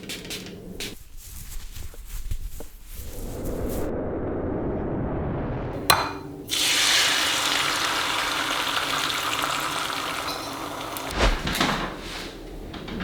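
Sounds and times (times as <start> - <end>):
water running: 6.4 - 11.7
dull thump: 11.1 - 12.0.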